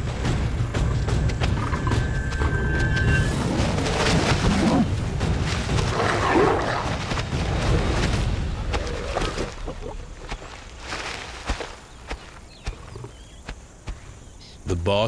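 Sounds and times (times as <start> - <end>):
lions growling and snarling: 3.3 - 11.0.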